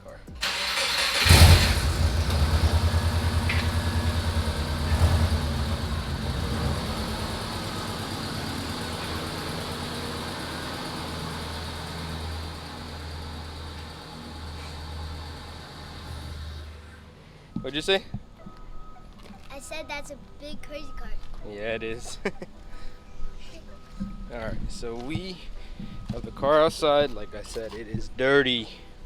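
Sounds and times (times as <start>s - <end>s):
car engine idling: 0.4s - 18.4s.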